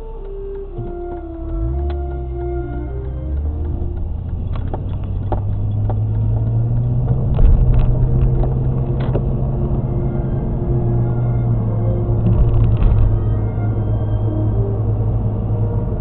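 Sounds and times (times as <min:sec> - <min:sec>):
sharp clicks: 0:00.0 - 0:10.2
road and engine rumble: 0:00.0 - 0:16.0.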